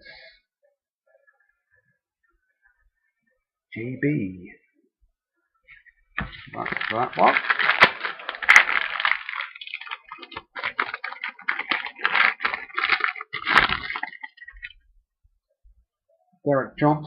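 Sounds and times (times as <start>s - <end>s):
foil wrapper tearing and crinkling: 6.2s - 14.8s.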